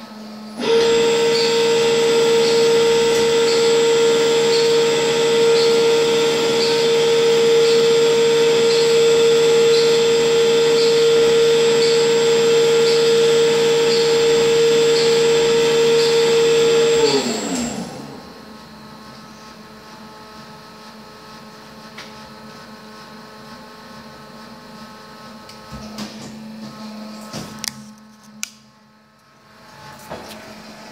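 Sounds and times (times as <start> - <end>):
small electric motor humming: 0.5 - 18.4.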